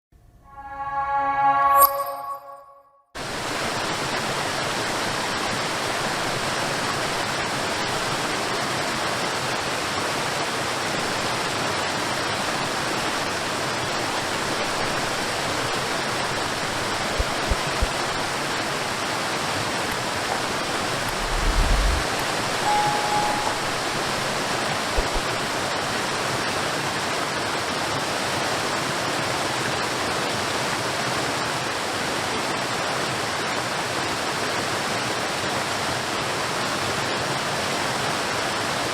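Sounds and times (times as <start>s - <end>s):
short beep: 0.5s - 3.0s, 21.2s - 24.0s
low bumps: 20.4s - 24.4s.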